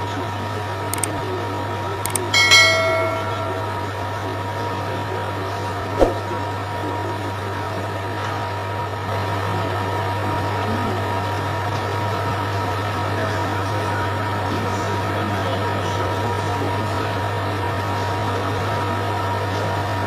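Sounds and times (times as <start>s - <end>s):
sharp click: 2.1s - 3.8s.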